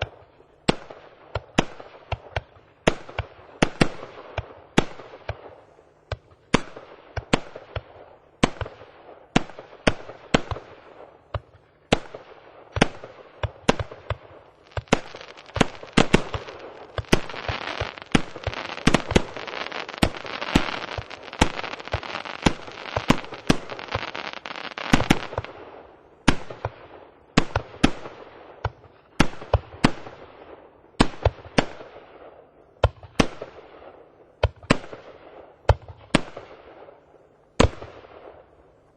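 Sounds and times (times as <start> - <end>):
firework bangs with crackle: 0.0 - 37.0
continuous firework crackling: 0.0 - 38.9.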